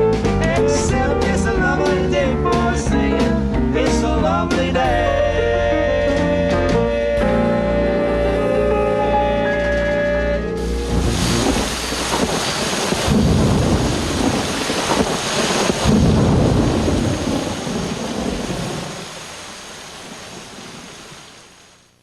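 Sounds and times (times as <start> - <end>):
heavy rain: 7.4 - 22.0
thunder rolling: 10.6 - 21.0.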